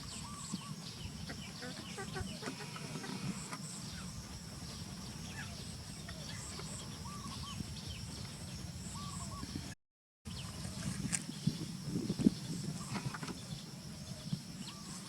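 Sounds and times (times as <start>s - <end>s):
chirping animal calls: 0.0s - 9.6s.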